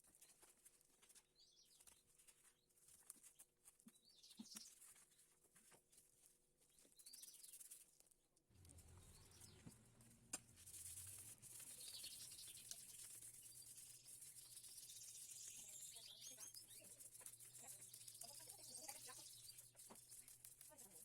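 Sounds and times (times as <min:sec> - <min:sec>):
low hum: 0:08.5 - 0:11.2.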